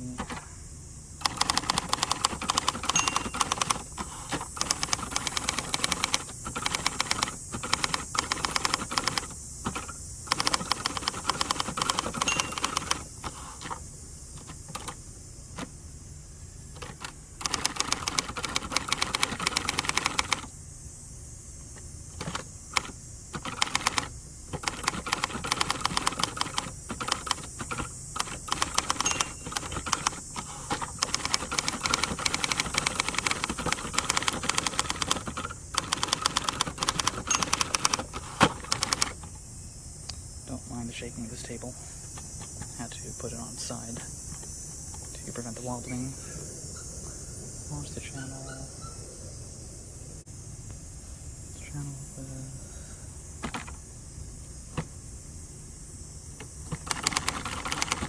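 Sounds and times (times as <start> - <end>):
manual typewriter keystrokes: 0.2 - 0.5, 1.2 - 13.8, 14.4 - 15.7, 16.8 - 20.5, 22.1 - 39.4, 56.4 - 58.0.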